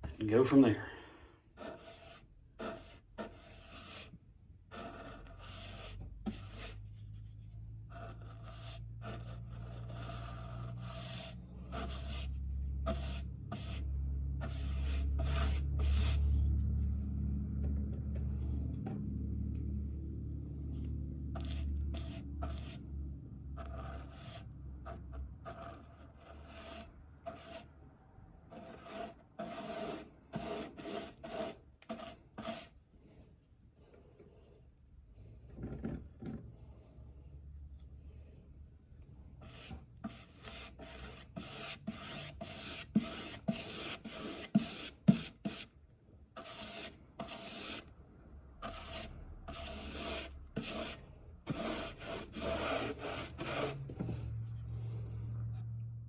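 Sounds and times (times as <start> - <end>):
paintbrush scraping wood: 8.3 - 17.0, 21.3 - 22.9, 28.5 - 32.8, 39.4 - 45.7, 48.6 - 55.0
low rumble: 12.6 - 23.8.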